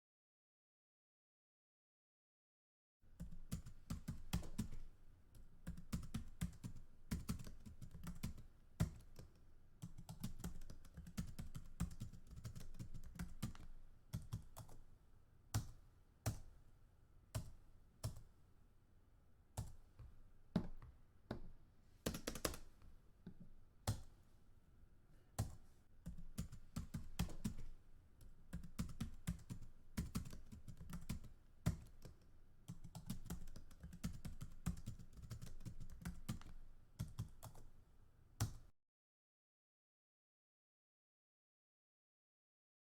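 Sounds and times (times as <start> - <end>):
typing on a keyboard: 3.2 - 14.8, 15.6 - 16.5, 17.4 - 18.3, 22.0 - 22.8, 25.4 - 37.7, 38.4 - 38.7.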